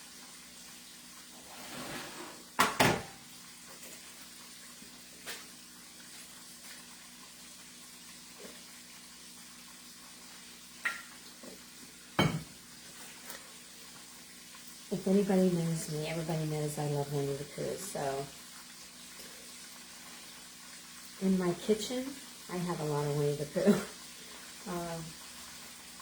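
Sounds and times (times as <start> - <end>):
chicken frying in oil: 0.0 - 26.0.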